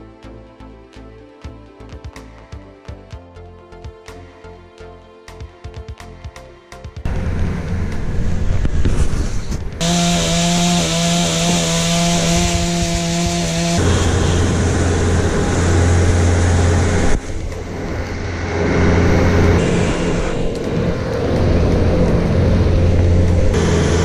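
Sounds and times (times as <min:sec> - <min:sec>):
chainsaw running: 0:09.8 - 0:17.6, 0:21.5 - 0:24.0.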